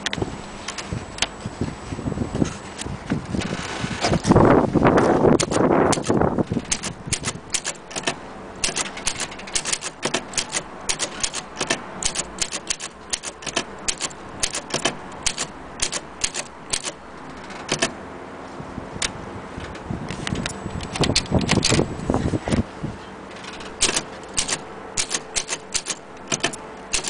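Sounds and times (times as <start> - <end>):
typewriter key strikes: 5.4 - 17.0, 17.6 - 17.9, 23.8 - 27.0.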